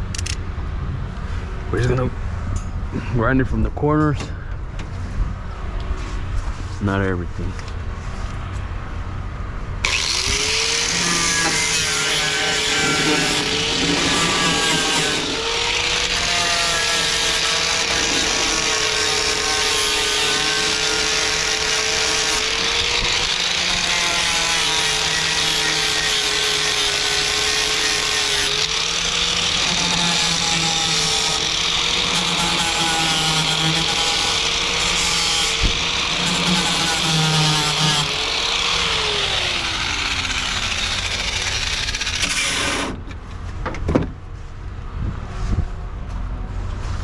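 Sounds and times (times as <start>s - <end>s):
angle grinder grinding metal: 9.8s - 43.0s.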